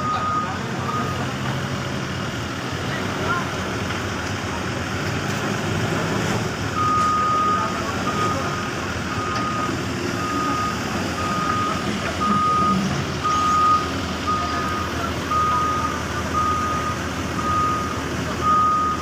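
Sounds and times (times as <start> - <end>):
reversing alarm beeping: 0.0 - 1.5, 6.8 - 19.0
diesel engines rumbling: 0.0 - 19.0.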